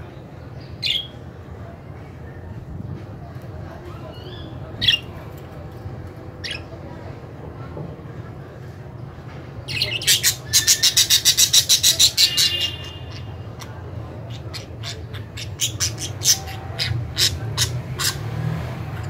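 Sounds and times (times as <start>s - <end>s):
budgerigars squawking and chirping: 9.8s - 18.3s.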